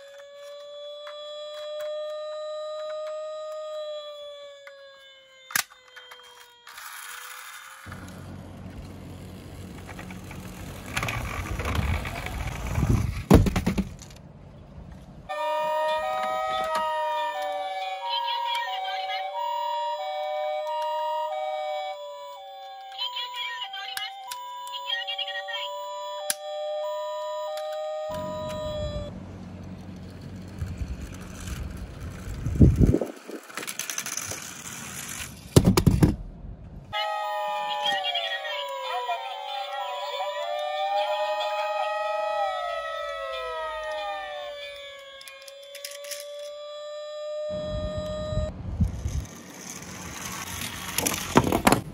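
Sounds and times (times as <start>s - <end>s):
toy cars rolling and rattling: 0.0s - 3.7s, 4.6s - 14.2s, 29.6s - 36.1s, 38.5s - 46.6s, 48.8s - 51.9s
music jingle: 15.3s - 29.1s, 36.9s - 45.2s.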